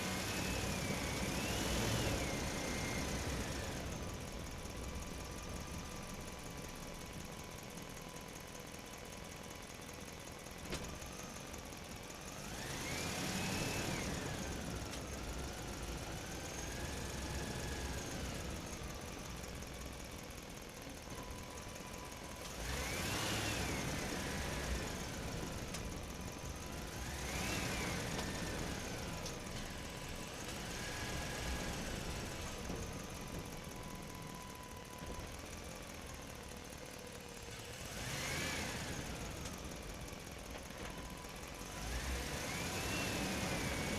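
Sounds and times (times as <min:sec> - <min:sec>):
engine revving: 0:00.0 - 0:03.9, 0:12.3 - 0:18.7, 0:22.5 - 0:25.8, 0:26.6 - 0:32.8, 0:37.7 - 0:39.6, 0:41.6 - 0:43.9.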